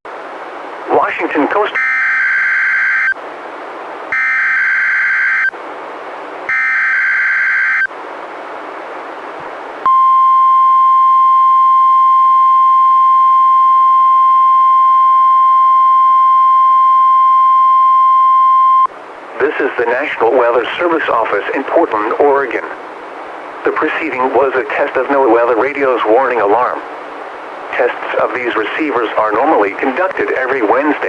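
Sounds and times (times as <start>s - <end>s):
radio hiss: 0.8s - 3.1s, 19.3s - 31.0s
steady warning alarm tone: 1.6s - 3.2s, 4.1s - 5.5s, 6.5s - 7.9s.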